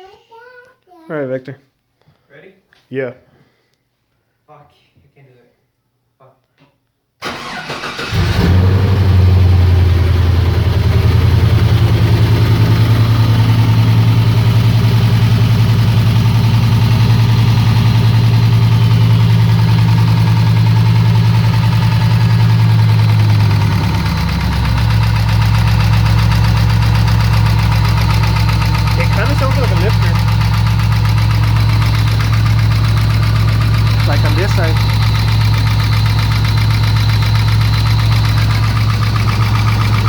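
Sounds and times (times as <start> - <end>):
car engine idling with knock: 9.3 - 40.0.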